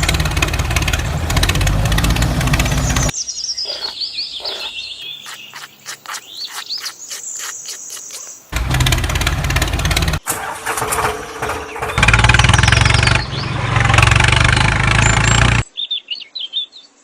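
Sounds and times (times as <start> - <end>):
loud steady machine noise: 0.0 - 3.1
birds chirping: 0.0 - 8.8, 9.4 - 17.0
insects calling: 2.5 - 8.6.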